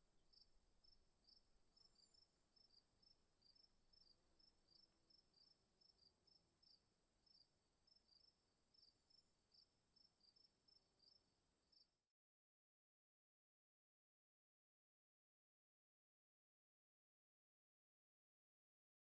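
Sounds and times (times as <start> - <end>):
faint insect chirping: 0.0 - 12.1.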